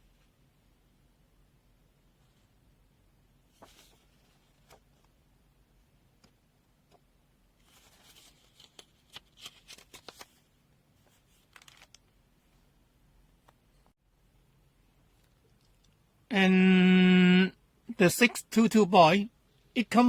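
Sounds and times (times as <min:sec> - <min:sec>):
soft rustling: 0:03.4 - 0:05.2, 0:07.6 - 0:12.7.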